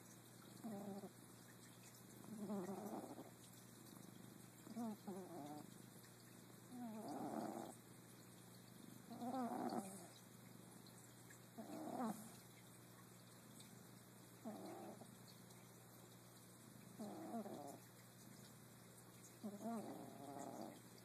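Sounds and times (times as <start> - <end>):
pet snoring: 0.6 - 1.1, 2.3 - 3.3, 4.7 - 5.7, 6.7 - 7.8, 9.1 - 10.2, 11.6 - 12.4, 14.4 - 15.1, 17.0 - 17.8, 19.4 - 20.8.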